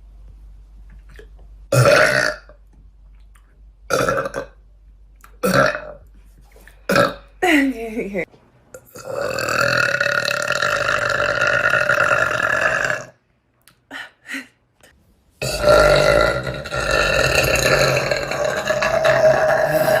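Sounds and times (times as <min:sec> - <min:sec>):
woman burping: 0:01.7 - 0:02.6, 0:05.4 - 0:06.0, 0:06.9 - 0:07.8, 0:15.4 - 0:20.0.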